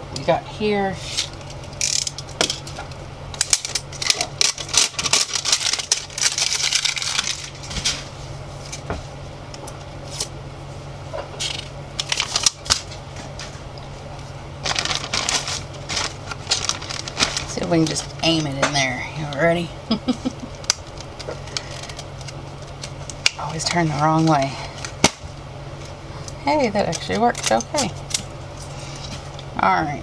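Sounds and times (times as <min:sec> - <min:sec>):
steady low hum: 0:00.0 - 0:30.0
plastic crinkling and rustling: 0:01.2 - 0:08.9, 0:11.4 - 0:19.4.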